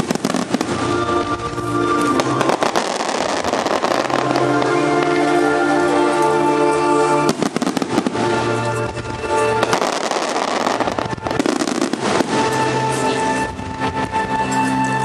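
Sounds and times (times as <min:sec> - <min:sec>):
fireworks bursting and crackling: 0:00.0 - 0:15.0
music of long held notes: 0:00.0 - 0:15.0.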